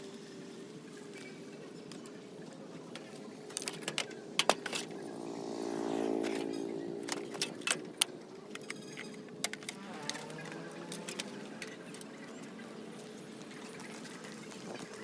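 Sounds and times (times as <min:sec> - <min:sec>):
small hard parts clicking: 0:02.9 - 0:05.0, 0:06.2 - 0:12.6.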